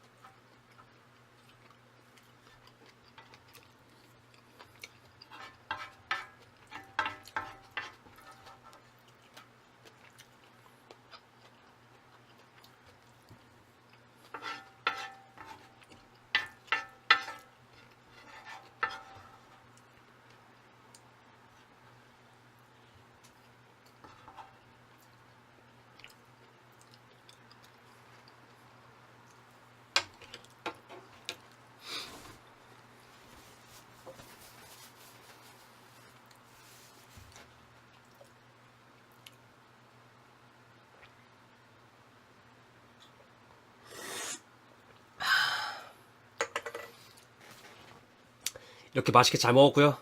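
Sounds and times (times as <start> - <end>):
spoon clinking and scraping dish: 14.3 - 19.5
person eating noodles: 43.8 - 44.4.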